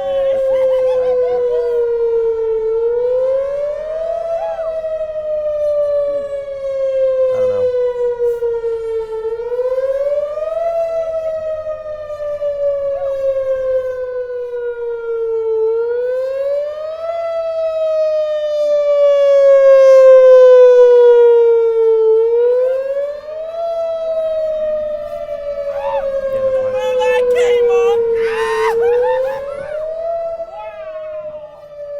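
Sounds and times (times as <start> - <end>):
wailing warning siren: 0.0 - 31.9.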